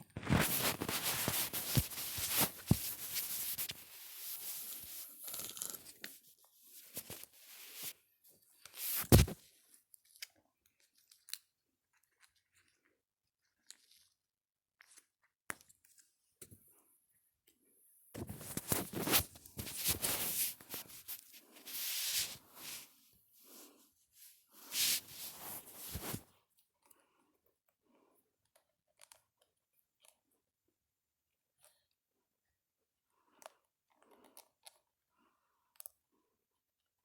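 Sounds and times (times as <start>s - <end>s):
crinkling crunching rustle: 0.1s - 5.9s, 18.2s - 22.9s, 24.5s - 26.2s.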